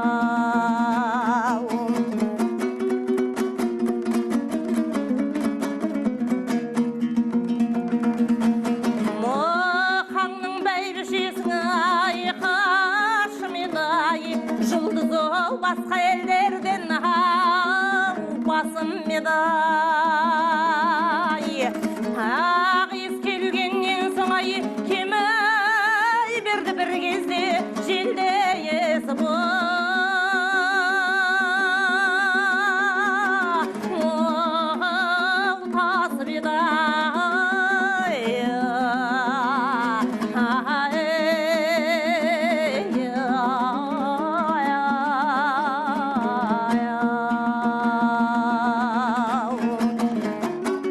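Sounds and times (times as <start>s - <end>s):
person singing folk song with vibrato: 0.0s - 50.9s
plucked string accompaniment: 0.0s - 50.9s.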